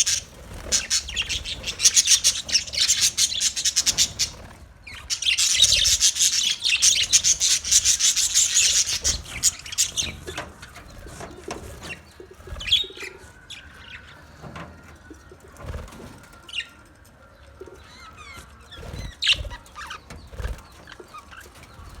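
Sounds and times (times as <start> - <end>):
wing flutters and rustling: 0.0 - 12.9, 18.7 - 22.0
budgerigars chirping: 0.0 - 14.1, 17.8 - 22.0.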